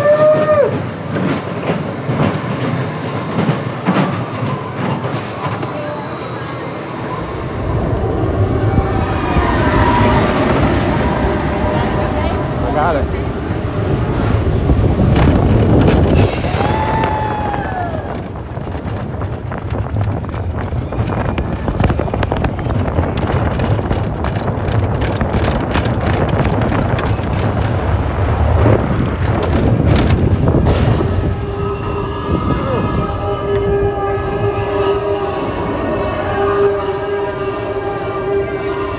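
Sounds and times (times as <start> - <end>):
wheels clattering on track: 0.0 - 31.6
roller coaster rumbling: 0.0 - 38.9
wind buffeting microphone: 7.1 - 37.5.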